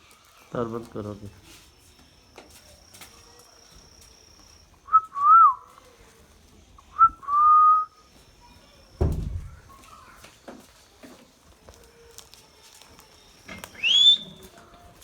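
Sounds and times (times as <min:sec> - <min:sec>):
low thump: 0:09.0 - 0:09.6
parrot whistling: 0:13.8 - 0:14.4.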